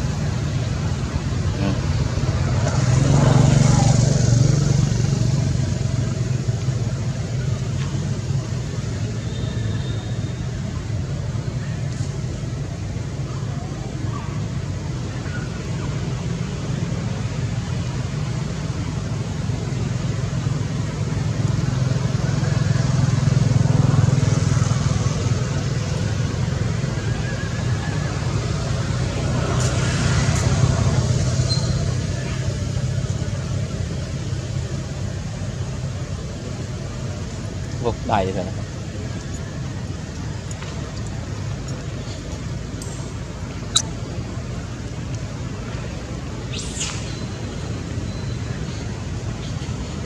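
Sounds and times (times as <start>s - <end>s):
vehicle passing close by: 1.6s - 6.0s.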